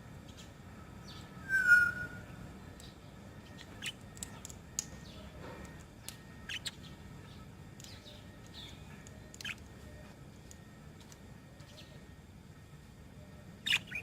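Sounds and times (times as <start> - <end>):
low steady hum: 0.0 - 14.0
budgerigars chirping: 13.6 - 14.0.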